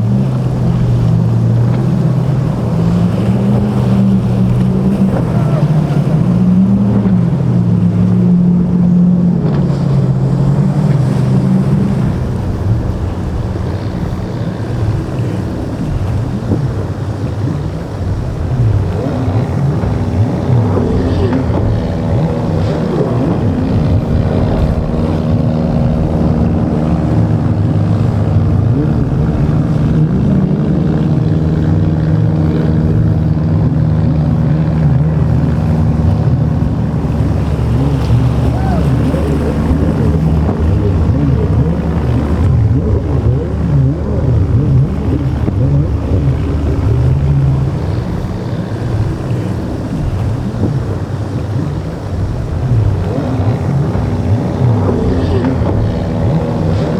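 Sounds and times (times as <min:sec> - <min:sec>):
motorboat engines running: 0:00.0 - 0:56.9
waves splashing: 0:00.0 - 0:56.9
wind buffeting microphone: 0:00.0 - 0:56.9.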